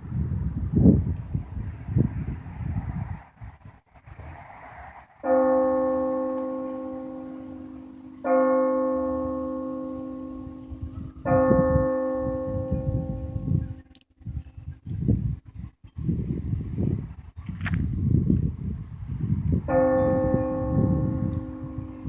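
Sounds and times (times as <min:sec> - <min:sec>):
church bell tolling: 0:05.2 - 0:13.8, 0:19.7 - 0:22.0.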